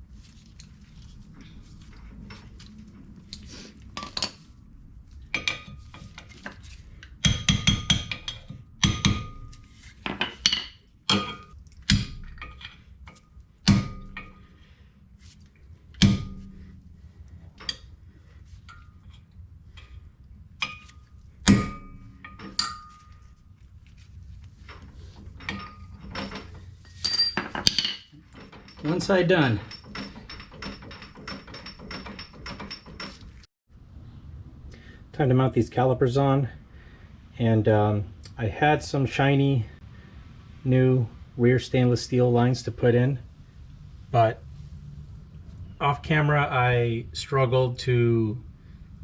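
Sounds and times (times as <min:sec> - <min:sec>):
low background hum: 0:00.0 - 0:49.0
metal parts clinking together: 0:20.6 - 0:23.3, 0:24.6 - 0:33.4.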